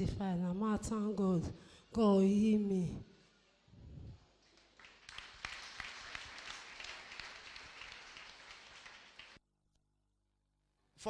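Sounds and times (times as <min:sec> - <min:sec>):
audience clapping: 0:04.4 - 0:09.4.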